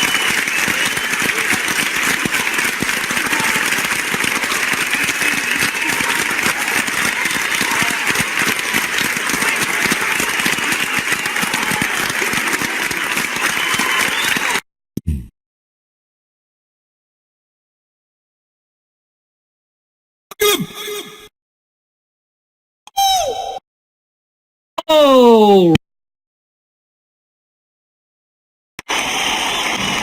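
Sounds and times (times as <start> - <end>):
crowd applause: 0.0 - 14.6, 28.8 - 30.0.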